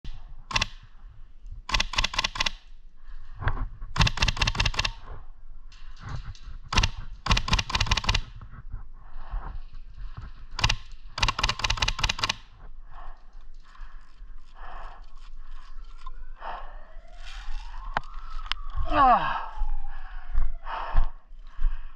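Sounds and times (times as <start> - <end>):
airsoft guns firing full-auto: 4.0 - 5.0, 10.6 - 12.4
scattered faint shots: 4.0 - 5.1.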